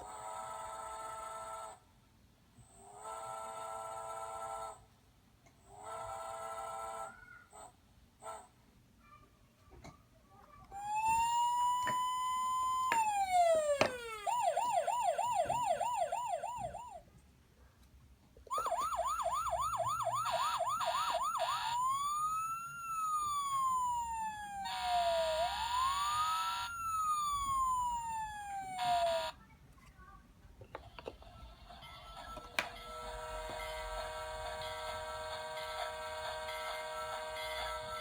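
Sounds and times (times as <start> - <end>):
toy siren from small speaker: 10.8 - 17.0, 18.5 - 29.4, 31.7 - 38.0.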